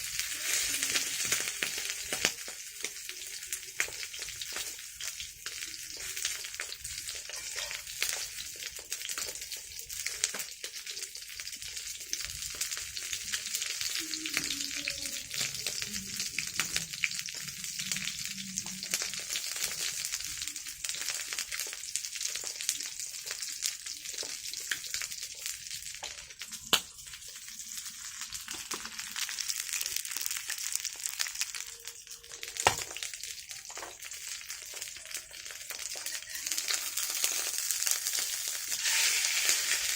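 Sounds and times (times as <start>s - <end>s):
food sizzling in hot oil: 0.0s - 39.9s.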